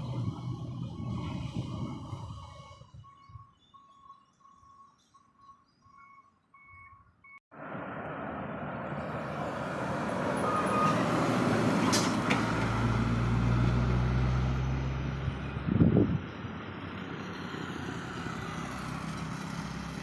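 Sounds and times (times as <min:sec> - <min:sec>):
heavy vehicle passing: 0:07.6 - 0:20.0.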